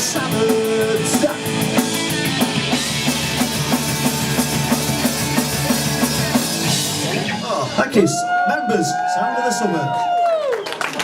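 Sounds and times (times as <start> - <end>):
drum kit beat: 0.0 - 8.2
punk rock band playing: 0.0 - 8.2.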